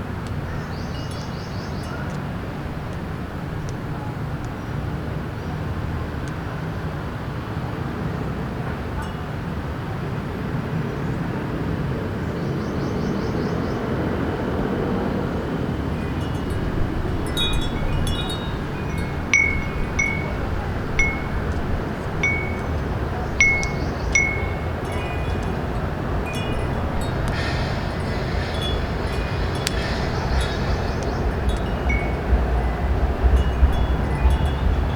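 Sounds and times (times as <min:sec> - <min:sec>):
wind chime ringing: 0:00.7 - 0:02.7, 0:15.8 - 0:34.9
low city hum: 0:14.3 - 0:34.9.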